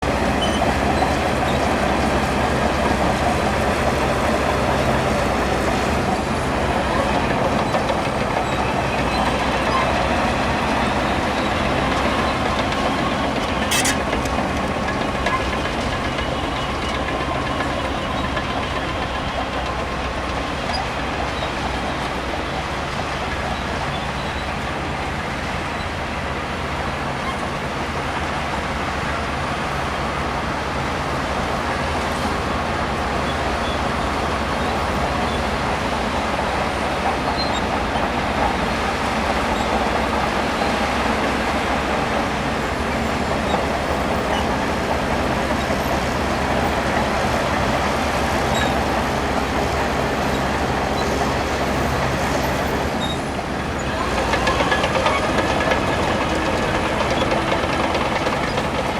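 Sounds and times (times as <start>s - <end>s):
clattering tracks: 0.0s - 29.2s, 30.1s - 58.9s
diesel engine running: 0.0s - 58.9s.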